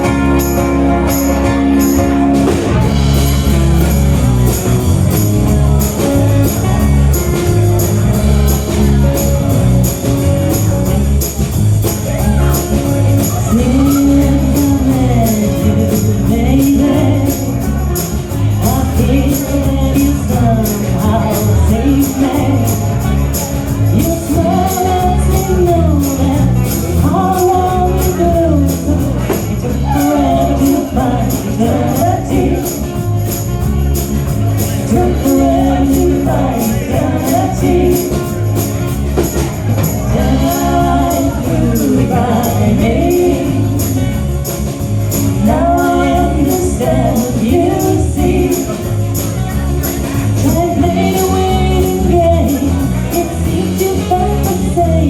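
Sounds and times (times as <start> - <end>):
band playing instrumental music: 0.0 - 55.0
bright high percussion beat: 21.4 - 54.7.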